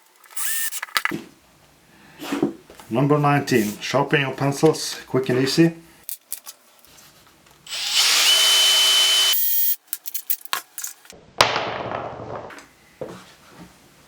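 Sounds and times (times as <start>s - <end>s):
power drill whining: 0.4s - 0.8s, 7.7s - 9.8s.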